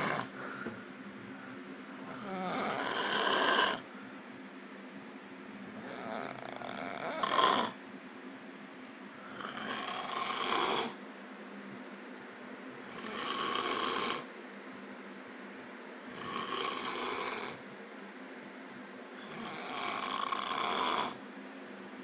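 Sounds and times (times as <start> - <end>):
person snoring loudly: 0.0 - 0.4, 2.0 - 3.9, 5.8 - 7.8, 9.2 - 11.0, 12.8 - 14.3, 16.0 - 17.6, 19.2 - 21.2.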